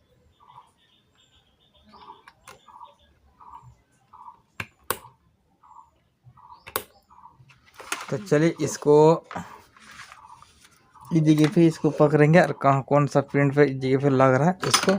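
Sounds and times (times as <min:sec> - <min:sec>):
small birds chirping: 0:00.0 - 0:14.5
sharp clicks: 0:04.6 - 0:05.2, 0:06.6 - 0:07.0.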